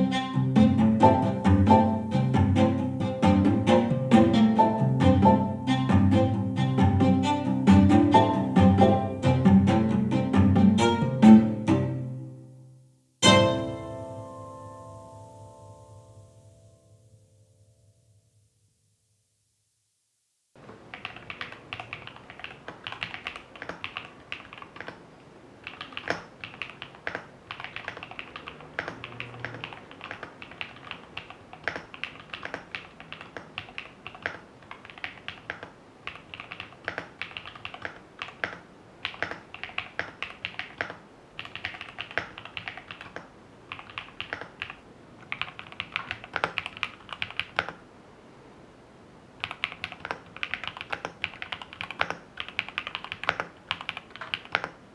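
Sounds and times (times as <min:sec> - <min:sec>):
typing on mechanical keyboard: 0:20.9 - 0:25.0, 0:25.6 - 0:47.8, 0:49.4 - 0:54.8.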